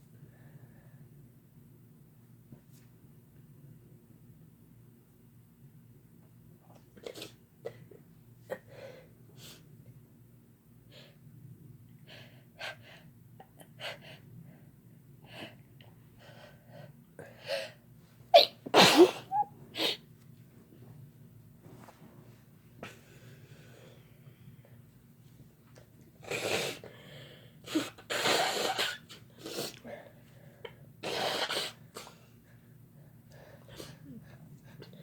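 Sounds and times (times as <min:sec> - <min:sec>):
person sneezing: 0:18.4 - 0:20.0, 0:31.0 - 0:32.2.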